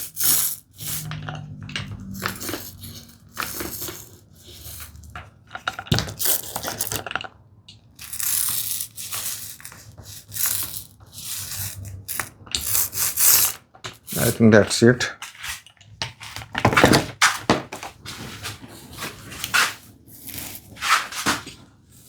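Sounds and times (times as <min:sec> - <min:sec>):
rustling and rubbing strokes: 0:08.0 - 0:22.0.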